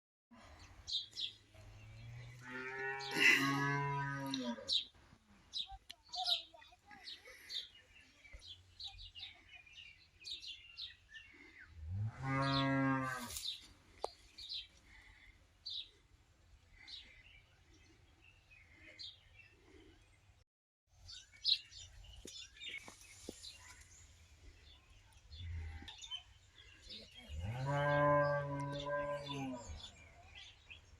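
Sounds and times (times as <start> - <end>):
small birds chirping: 0.5 - 30.9
cow mooing: 2.0 - 4.7, 11.9 - 13.4, 27.3 - 29.6.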